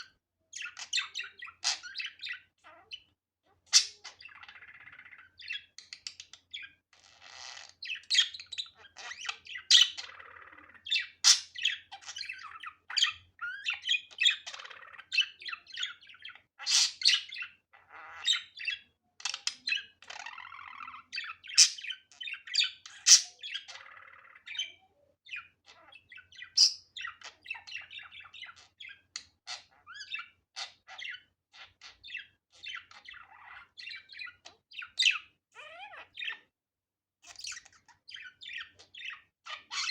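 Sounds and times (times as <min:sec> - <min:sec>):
budgerigar chirping and chattering: 0:00.0 - 0:36.5, 0:37.2 - 0:39.9
sharp budgerigar calls: 0:07.8 - 0:18.8, 0:21.2 - 0:24.8.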